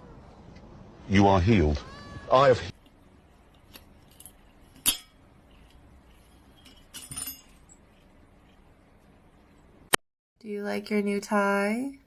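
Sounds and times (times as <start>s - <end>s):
light metallic jingle: 4.0s - 8.0s
sharp clink: 4.1s - 5.2s.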